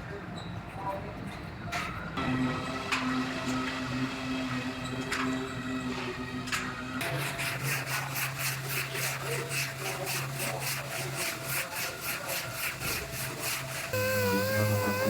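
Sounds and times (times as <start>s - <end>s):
hand sanding strokes: 7.0s - 15.0s.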